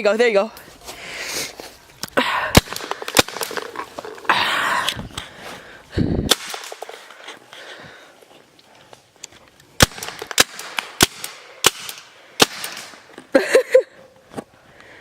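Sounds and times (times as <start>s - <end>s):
paintball gun pops: 2.0s - 4.2s.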